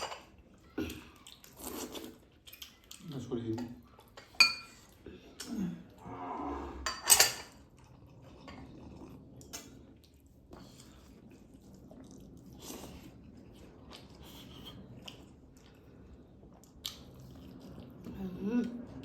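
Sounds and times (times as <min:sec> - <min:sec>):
dishes and utensils clinking: 0:00.0 - 0:00.4, 0:03.6 - 0:05.0, 0:06.8 - 0:07.7.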